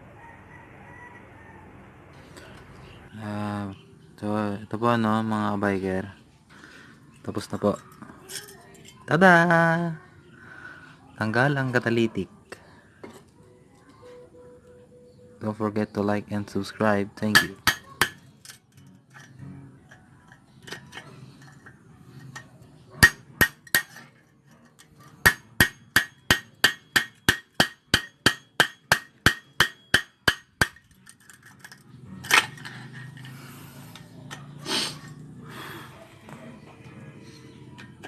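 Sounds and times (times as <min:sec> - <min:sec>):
hammer striking metal: 0:17.3 - 0:18.6, 0:23.0 - 0:24.0, 0:25.2 - 0:30.9
metal clattering: 0:17.4 - 0:33.4.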